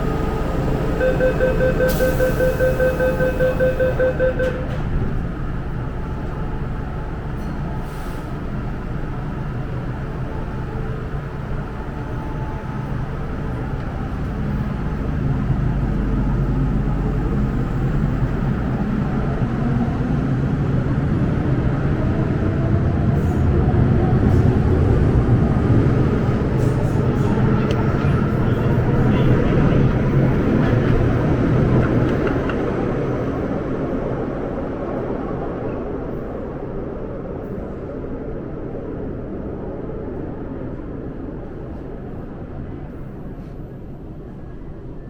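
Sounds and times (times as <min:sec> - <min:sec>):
train rumble: 0:00.0 - 0:45.0.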